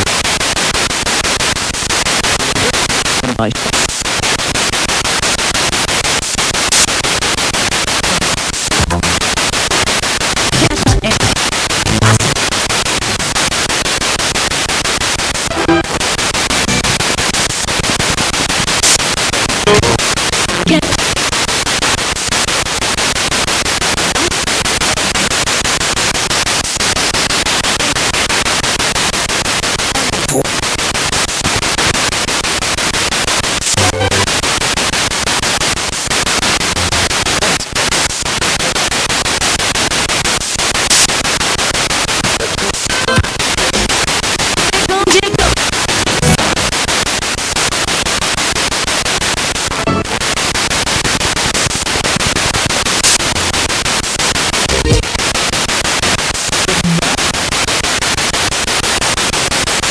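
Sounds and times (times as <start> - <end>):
radio static: 0.0 - 59.9
voice-like snatches: 2.4 - 3.9, 6.7 - 6.9, 10.5 - 12.4, 18.8 - 19.1, 20.6 - 21.0, 24.1 - 24.4, 40.9 - 41.2, 44.7 - 46.6, 51.6 - 53.6, 54.6 - 55.2.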